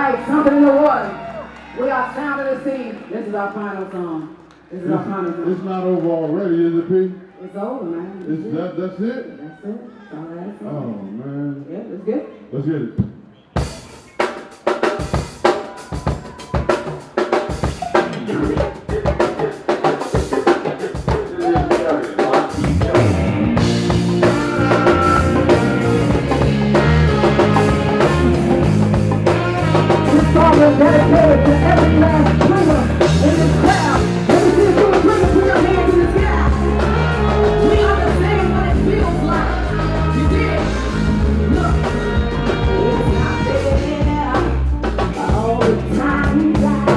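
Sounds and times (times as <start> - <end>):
drum kit playing: 13.6 - 46.9
live band playing: 13.6 - 46.9.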